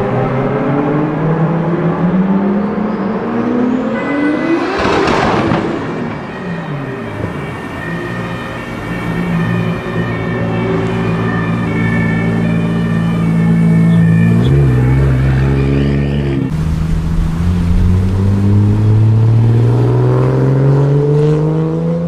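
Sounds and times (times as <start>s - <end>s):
car passing by: 3.0s - 8.6s, 14.2s - 22.0s.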